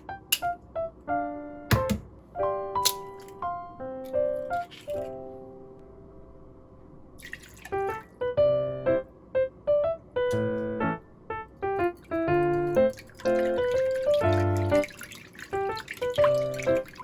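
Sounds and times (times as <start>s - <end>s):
bouncy keyboard melody: 0.0s - 6.7s, 7.7s - 17.0s
faint low noise: 5.1s - 7.2s.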